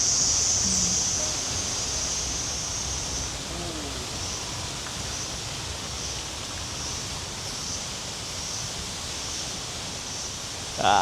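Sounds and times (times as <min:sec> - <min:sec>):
faint pulsing high buzz: 0:00.0 - 0:04.6
running water rushing: 0:00.0 - 0:11.0.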